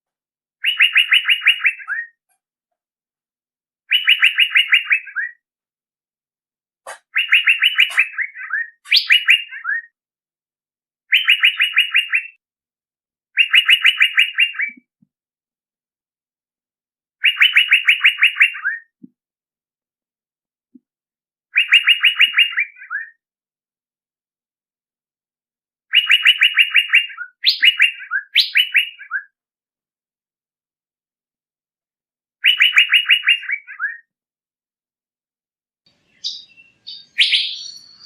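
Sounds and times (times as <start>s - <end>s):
bird calling in rapid bursts: 0.6s - 2.2s, 3.9s - 5.5s, 6.9s - 10.0s, 11.1s - 12.4s, 13.4s - 14.9s, 17.2s - 19.0s, 21.5s - 23.2s, 25.9s - 29.4s, 32.4s - 34.1s, 36.0s - 38.0s.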